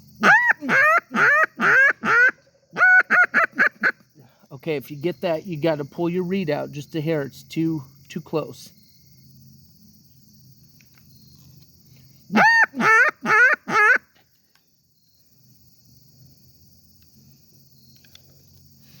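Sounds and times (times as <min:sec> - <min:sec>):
duck call quacks: 0:00.2 - 0:04.0, 0:12.3 - 0:14.1.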